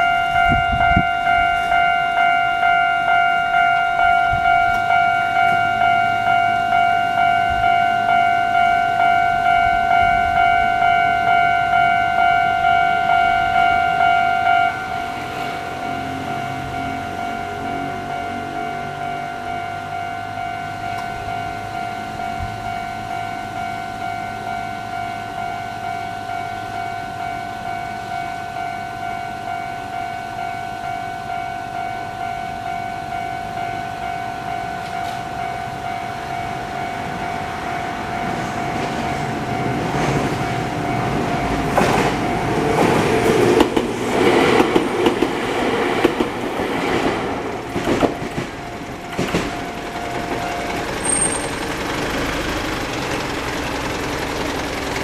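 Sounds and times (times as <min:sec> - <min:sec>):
level crossing warning bell: 0:00.0 - 0:55.0
train wheels clacking over rail joints: 0:38.2 - 0:55.0.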